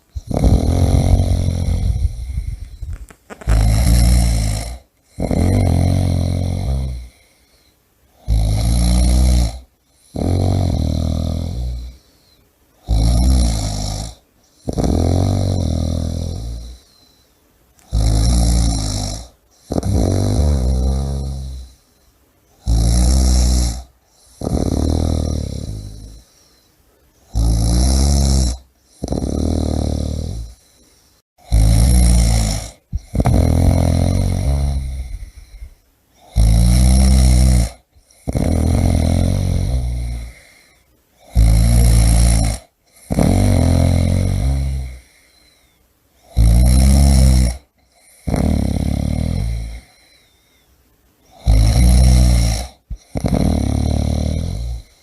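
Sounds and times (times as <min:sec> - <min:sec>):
person snoring loudly: 0:00.1 - 0:07.3, 0:08.2 - 0:12.0, 0:12.8 - 0:17.0, 0:17.8 - 0:21.8, 0:22.6 - 0:26.3, 0:27.3 - 0:30.8, 0:31.4 - 0:45.4, 0:46.2 - 0:50.2, 0:51.3 - 0:55.0.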